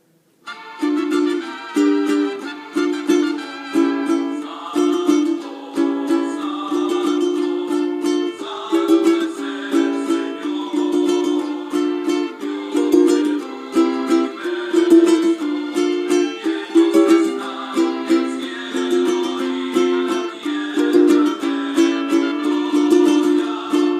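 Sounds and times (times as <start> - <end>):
ukulele strumming chords: 0.4 - 23.9.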